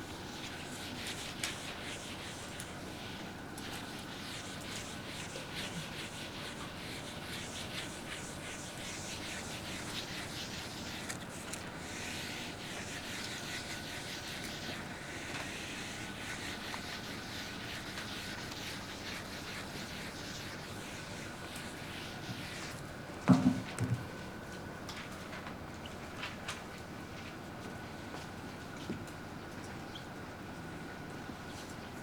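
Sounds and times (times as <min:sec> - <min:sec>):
faint high hum: 0:00.0 - 0:32.0
pen scratching on paper: 0:03.7 - 0:22.7.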